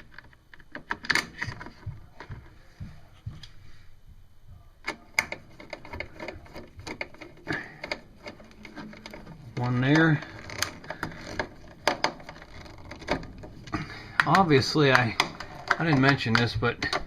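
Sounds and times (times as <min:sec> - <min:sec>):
plastic cover clicks and knocks: 0:08.6 - 0:17.0.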